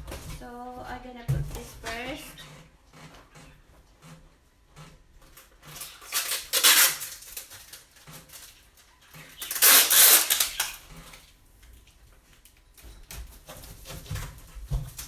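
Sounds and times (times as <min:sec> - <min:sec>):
packing tape tearing off roll: 0:04.8 - 0:11.4.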